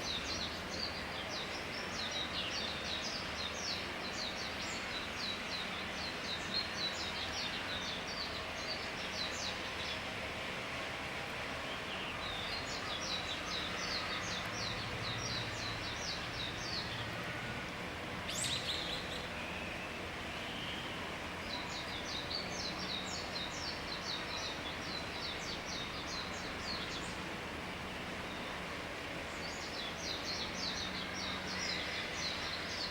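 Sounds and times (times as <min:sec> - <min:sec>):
river hiss: 0:00.0 - 0:32.9.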